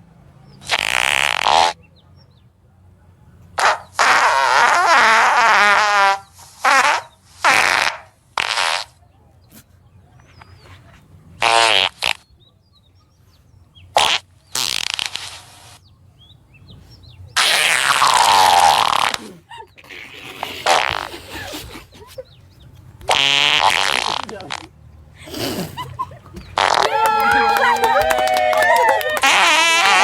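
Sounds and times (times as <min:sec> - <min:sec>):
fart sounds: 0:00.6 - 0:01.8, 0:03.6 - 0:09.0, 0:11.4 - 0:12.3, 0:13.9 - 0:15.8, 0:17.4 - 0:21.9, 0:23.0 - 0:25.8, 0:26.4 - 0:27.0, 0:29.2 - 0:30.0.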